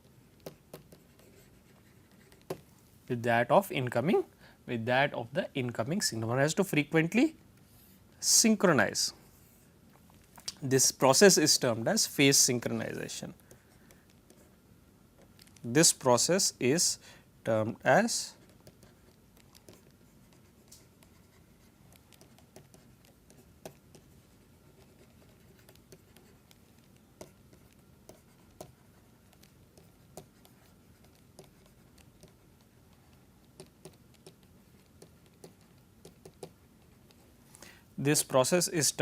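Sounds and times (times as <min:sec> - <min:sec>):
pen writing on a surface: 0:00.4 - 0:02.6, 0:18.4 - 0:37.3.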